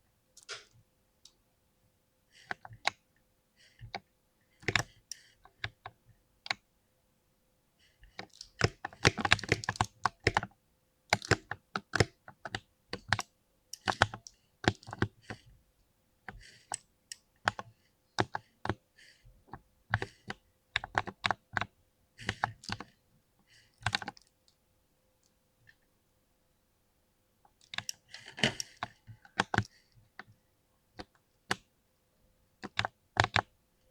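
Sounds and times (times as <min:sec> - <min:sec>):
mechanical keyboard clacks: 0:08.2 - 0:10.4.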